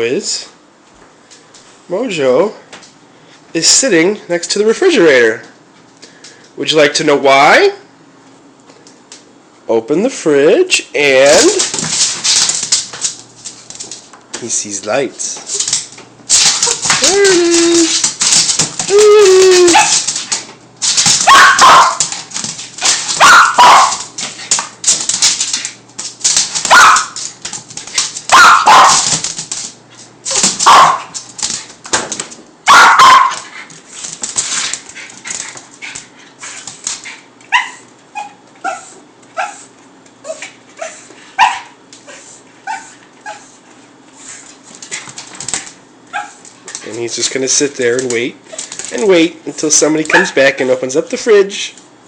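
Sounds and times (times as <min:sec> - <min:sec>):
dog barking loudly: 0:21.2 - 0:22.1, 0:23.0 - 0:24.1, 0:26.7 - 0:27.2, 0:28.3 - 0:29.1, 0:30.6 - 0:31.2, 0:32.6 - 0:33.5, 0:37.5 - 0:39.7, 0:41.4 - 0:41.8, 0:46.1 - 0:46.4, 0:50.1 - 0:50.4
dog whining: 0:37.5 - 0:43.6.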